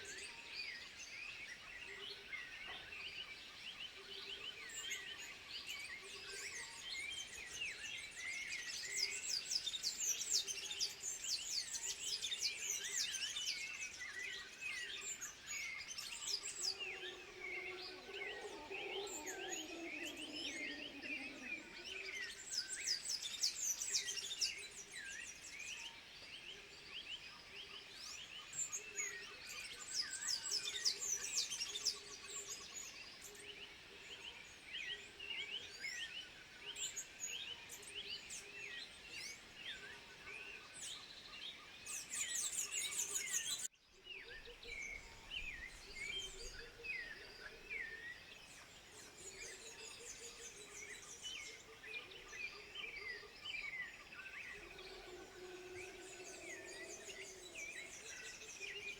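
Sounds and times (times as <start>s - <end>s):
high chirping animal calls: 16.4s - 22.3s, 54.5s - 58.9s
low animal call: 16.8s - 22.2s, 54.5s - 58.3s.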